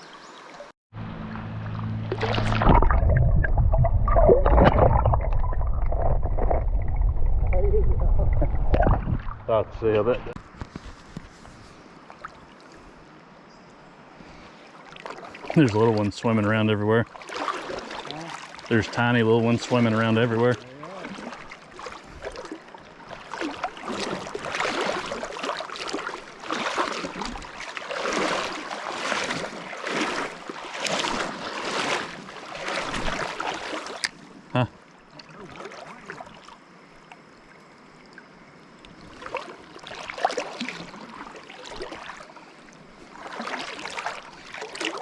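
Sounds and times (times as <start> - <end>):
legs wading through river water: 1.3 - 7.8, 8.5 - 13.4, 14.0 - 45.0.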